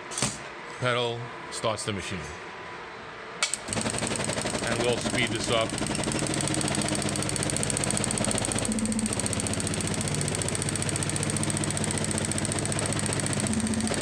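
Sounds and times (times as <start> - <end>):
sewing machine stitching: 3.7 - 14.0.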